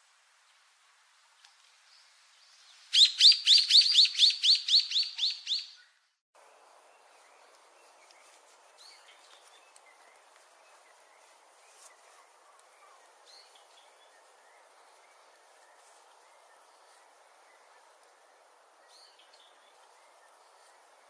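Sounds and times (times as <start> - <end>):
background hiss: 0.0 - 21.0
songbird chirping: 0.4 - 21.0.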